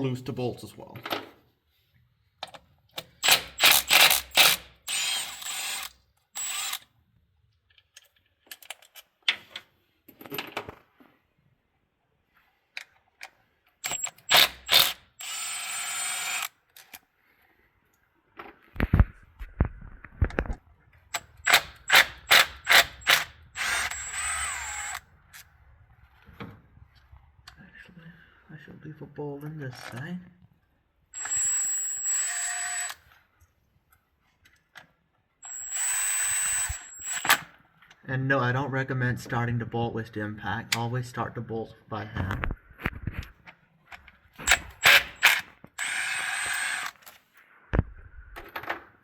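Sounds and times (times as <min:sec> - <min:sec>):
bolt whirring as it spins: 0:03.0 - 0:06.9, 0:13.8 - 0:16.5, 0:21.1 - 0:25.0, 0:31.2 - 0:33.0, 0:35.4 - 0:37.5, 0:44.4 - 0:47.2
impact gun whining: 0:21.2 - 0:25.0, 0:31.2 - 0:33.0, 0:35.5 - 0:37.5, 0:44.4 - 0:47.1.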